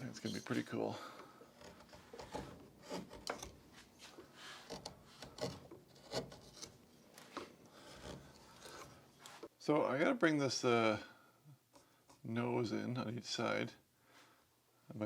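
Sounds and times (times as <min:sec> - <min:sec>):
carving tool scraping stick: 0:00.0 - 0:09.5.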